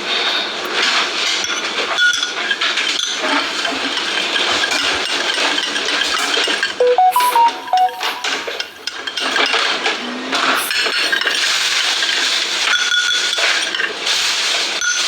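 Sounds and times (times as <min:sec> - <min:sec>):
beep-like notes: 0:06.8 - 0:08.8.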